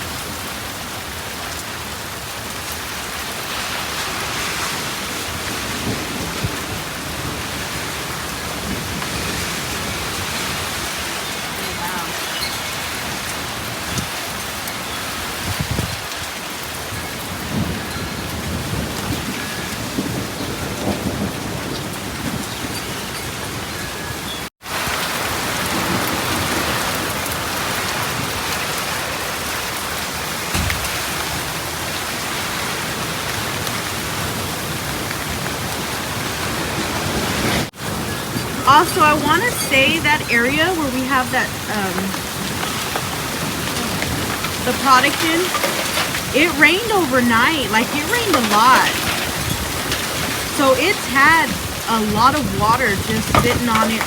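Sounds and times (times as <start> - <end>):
hail falling: 0.0 - 23.6, 24.7 - 54.0
heavy rain pouring: 0.0 - 54.0
thunder rumbling: 36.1 - 54.0.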